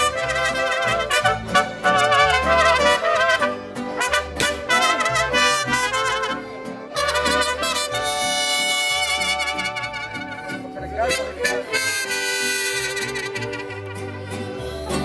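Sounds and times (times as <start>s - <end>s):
bass line: 0.0s - 6.4s
trumpets and trombones: 0.0s - 14.3s.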